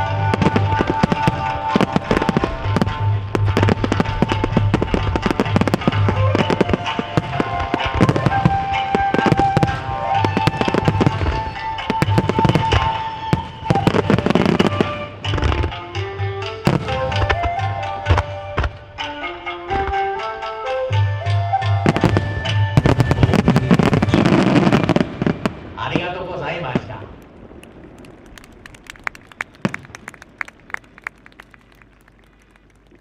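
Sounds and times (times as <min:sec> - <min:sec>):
fireworks bursts and crackling: 0:00.0 - 0:20.0, 0:21.6 - 0:33.0
music with held melody notes: 0:00.0 - 0:25.6.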